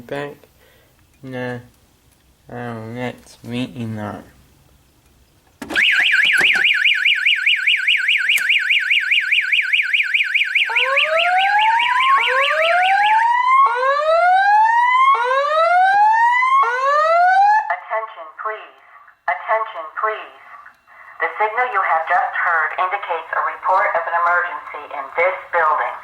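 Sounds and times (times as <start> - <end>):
rising whoop alarm tone: 5.8 - 17.6
warbling alarm tone: 5.8 - 17.6.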